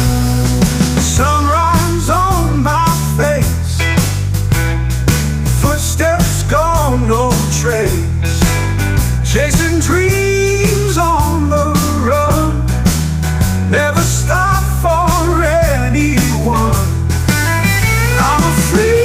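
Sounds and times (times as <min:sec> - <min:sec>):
rock music: 0:00.0 - 0:19.0.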